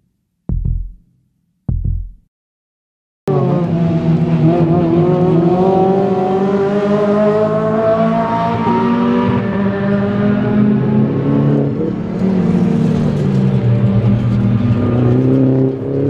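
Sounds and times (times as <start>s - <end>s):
racing car engine at speed: 3.3s - 16.0s.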